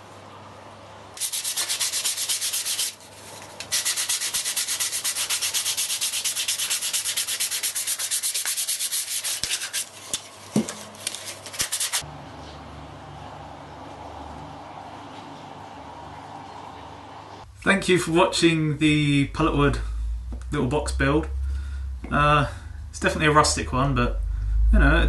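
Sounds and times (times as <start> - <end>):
sandpaper rubbing on wood: 1.2 - 3.0, 3.7 - 10.0, 11.2 - 12.0.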